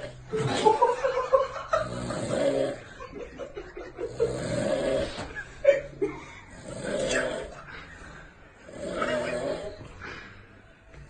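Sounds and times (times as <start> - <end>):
person snoring: 1.7 - 3.2, 4.0 - 10.4.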